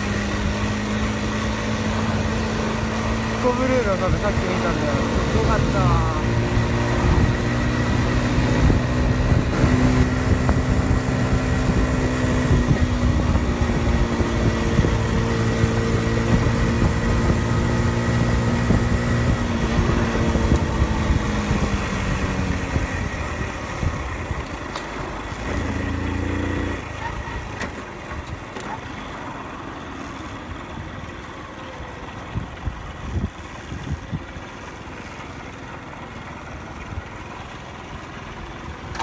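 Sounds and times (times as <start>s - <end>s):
motorbike engine running: 0.0s - 39.0s
wind rumble on microphone: 6.2s - 24.6s, 32.3s - 34.4s.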